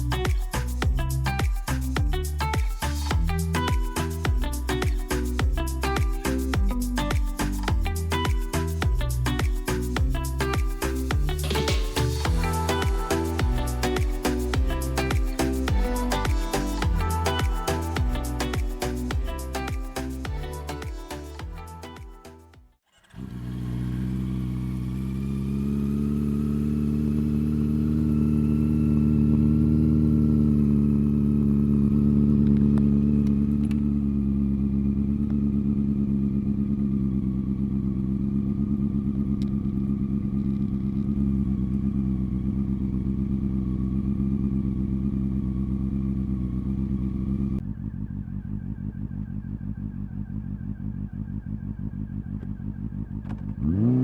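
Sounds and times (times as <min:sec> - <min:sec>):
motorcycle engine idling: 0:23.1 - 0:53.7.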